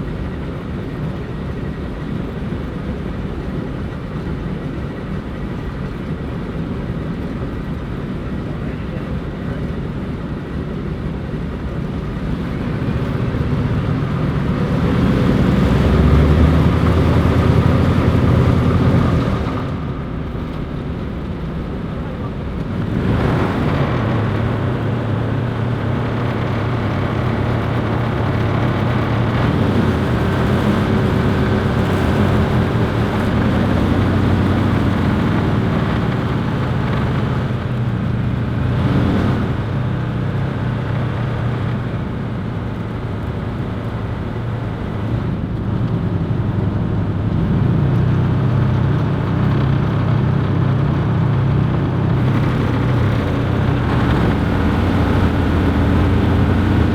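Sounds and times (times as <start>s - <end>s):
aircraft engines droning: 0.0s - 56.9s.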